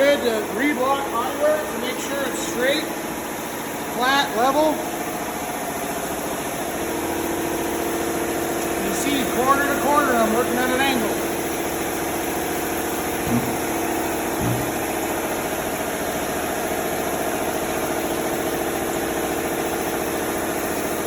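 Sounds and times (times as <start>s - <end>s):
sander whirring: 13.1s - 15.0s
short low thumps: 13.2s - 15.1s.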